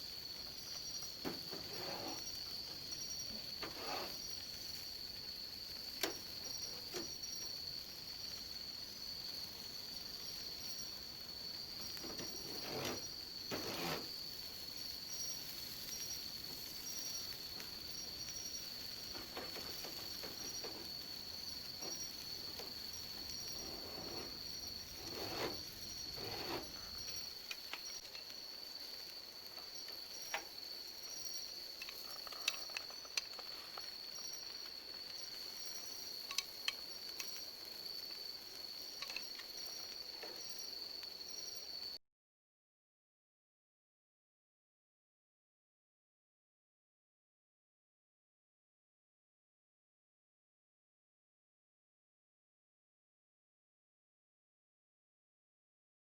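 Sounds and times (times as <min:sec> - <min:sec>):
insects trilling: 0:00.0 - 0:42.0.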